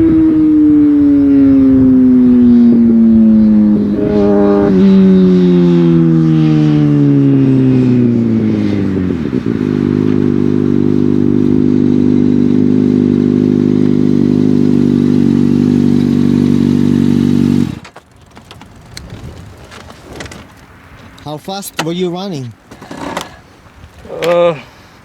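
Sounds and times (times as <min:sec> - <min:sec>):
motorcycle engine idling: 0:00.0 - 0:17.8.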